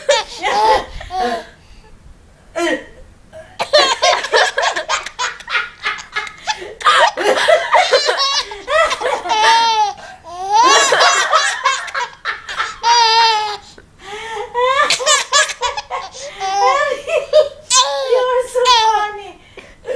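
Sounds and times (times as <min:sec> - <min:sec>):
baby laughing and squealing: 0:00.0 - 0:01.5, 0:07.9 - 0:13.7, 0:14.6 - 0:19.1.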